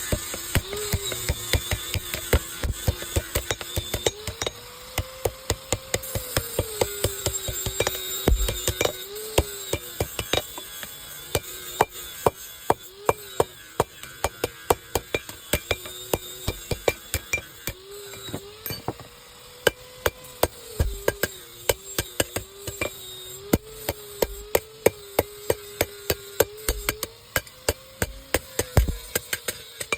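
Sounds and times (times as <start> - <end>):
faint wavering hum: 0.0 - 29.9
hammer striking steel: 0.1 - 10.6, 11.3 - 19.0.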